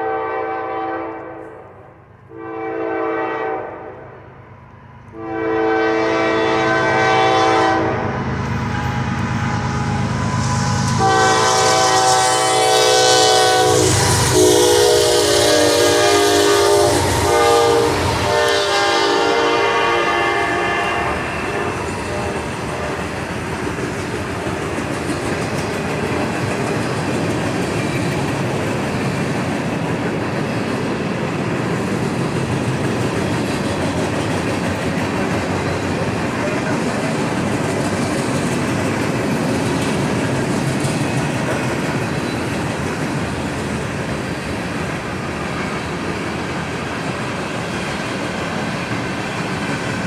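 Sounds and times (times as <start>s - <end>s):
locomotive air horn blasts: 0.0s - 4.3s, 5.1s - 23.0s
train wheels rumbling on rail: 1.0s - 50.0s.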